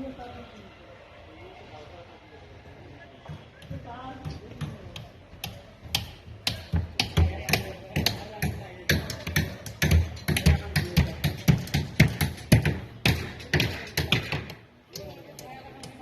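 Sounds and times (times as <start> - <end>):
rapid knocking: 3.4 - 14.6.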